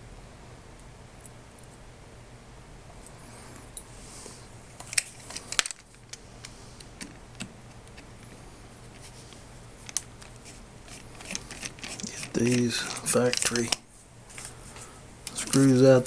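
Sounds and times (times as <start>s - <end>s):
screwdriver clicking on metal: 9.9s - 13.8s, 15.2s - 15.8s.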